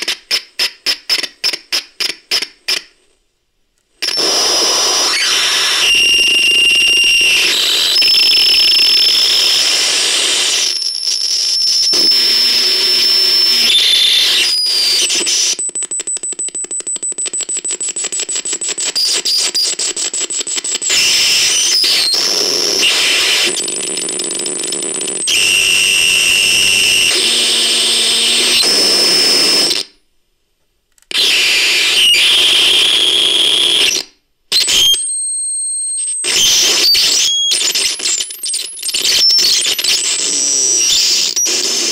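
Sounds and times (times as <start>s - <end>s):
harsh electronic static and buzz: 4.0s - 15.6s, 18.0s - 29.9s, 31.1s - 35.0s, 36.3s - 41.9s
high whistling tones: 4.1s - 9.7s.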